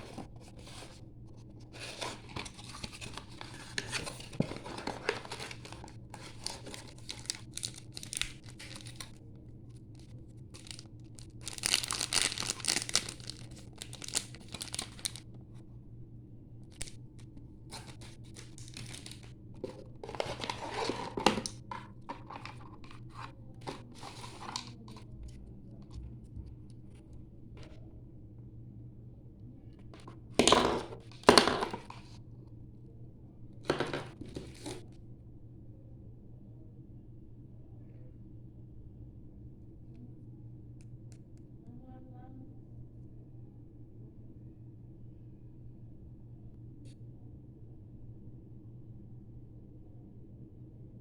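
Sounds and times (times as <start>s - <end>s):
plastic and paper crinkling: 0.0s - 15.3s, 16.7s - 25.0s, 30.0s - 32.1s, 33.7s - 34.8s
faint steady hum: 0.0s - 51.0s.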